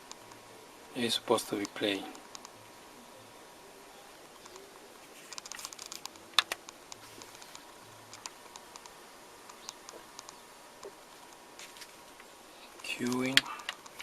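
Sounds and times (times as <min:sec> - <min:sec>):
turntable mechanism clicking: 0:05.3 - 0:11.4.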